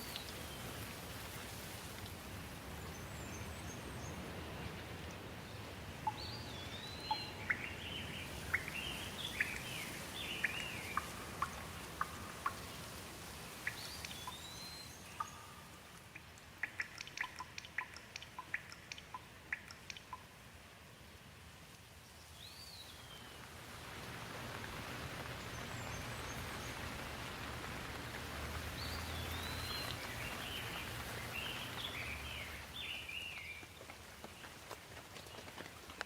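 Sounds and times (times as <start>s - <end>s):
water drips: 0.0s - 20.5s, 21.6s - 36.0s
steady rain: 0.0s - 36.0s
birds chirping: 6.0s - 13.0s, 13.6s - 15.7s, 28.7s - 33.7s.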